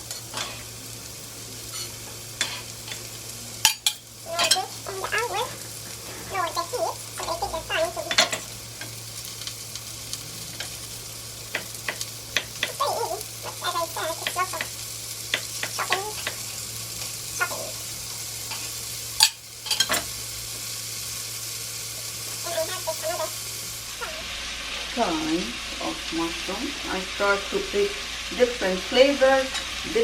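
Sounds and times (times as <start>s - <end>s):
vegetables sizzling in a pan: 0.0s - 30.0s
utensil scraping a pan: 1.7s - 3.0s.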